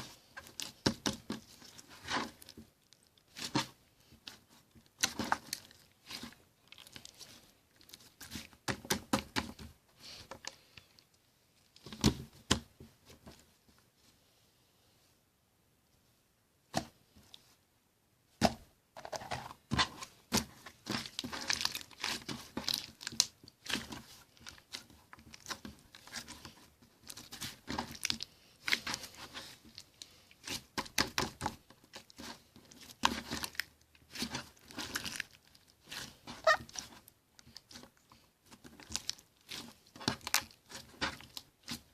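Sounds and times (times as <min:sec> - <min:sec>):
slime squished by hand: 0:19.8 - 0:41.9.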